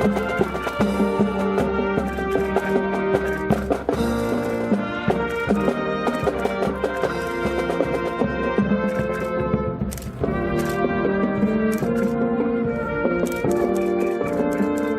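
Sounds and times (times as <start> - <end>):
brass band music: 0.0 - 14.9
drum strikes: 0.0 - 14.9.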